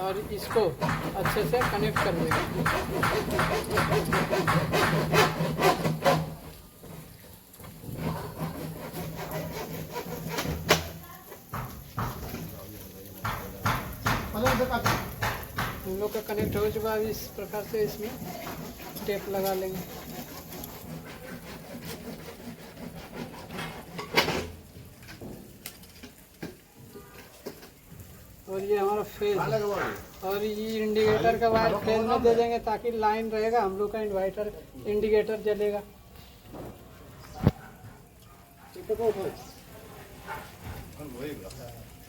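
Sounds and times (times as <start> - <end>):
copper wire scraping and rubbing: 0.2 - 11.0, 16.0 - 26.3
sharp knock: 0.4 - 5.4, 13.2 - 16.6.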